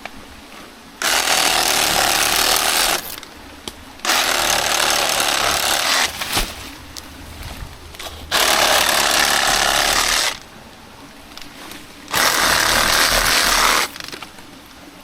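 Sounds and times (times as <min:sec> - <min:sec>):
reciprocating saw cutting plant stem: 0:01.0 - 0:03.3, 0:04.0 - 0:07.1, 0:07.9 - 0:10.5, 0:11.3 - 0:14.4.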